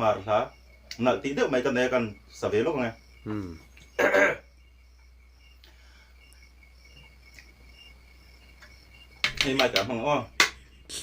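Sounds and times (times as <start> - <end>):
faint cricket chirping: 0.0 - 11.0.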